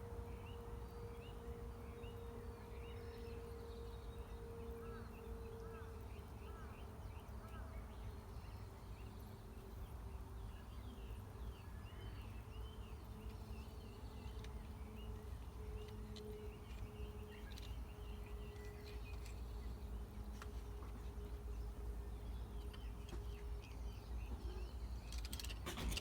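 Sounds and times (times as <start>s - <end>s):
bird twittering and warbling: 12.0s - 26.0s.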